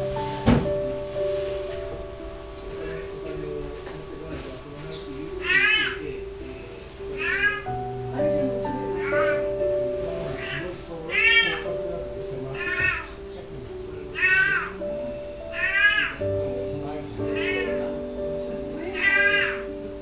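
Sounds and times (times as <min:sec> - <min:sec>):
background music with held notes: 0:00.0 - 0:20.0
cat meowing: 0:05.4 - 0:06.1, 0:07.2 - 0:07.7, 0:10.3 - 0:11.6, 0:12.6 - 0:13.2, 0:14.2 - 0:14.8, 0:15.6 - 0:16.2, 0:18.9 - 0:19.8.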